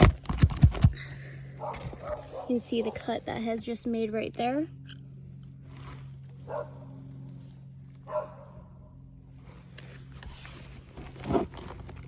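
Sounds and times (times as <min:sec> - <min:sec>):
low hum: 0:00.0 - 0:12.0
dog barking: 0:01.6 - 0:03.1, 0:06.5 - 0:06.9, 0:08.1 - 0:08.7.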